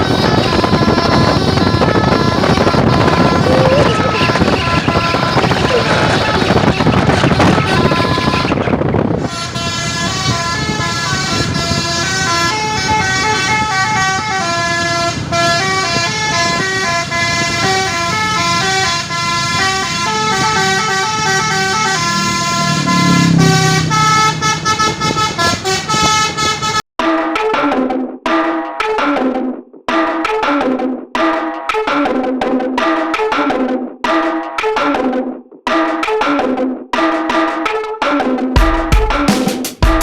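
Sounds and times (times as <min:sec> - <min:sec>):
musical bus horn melody: 0:00.0 - 0:26.8.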